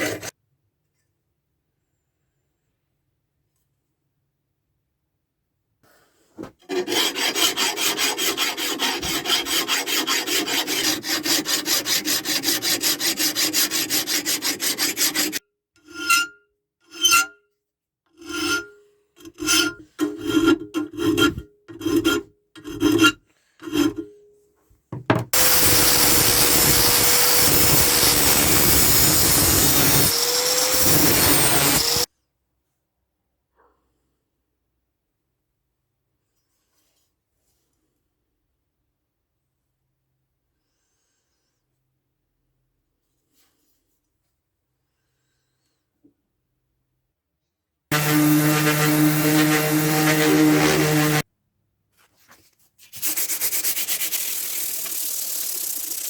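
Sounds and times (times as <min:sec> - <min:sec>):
hand tool rasping and filing: 0:06.6 - 0:17.4, 0:18.2 - 0:24.1, 0:25.4 - 0:32.1, 0:47.9 - 0:51.2, 0:53.0 - 0:56.0
steady hissing grind: 0:25.4 - 0:32.1, 0:53.0 - 0:56.0.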